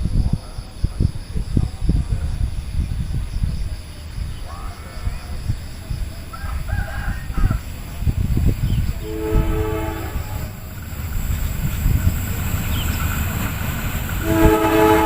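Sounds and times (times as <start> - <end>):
train horn chord: 9.0 - 10.6, 14.2 - 15.0.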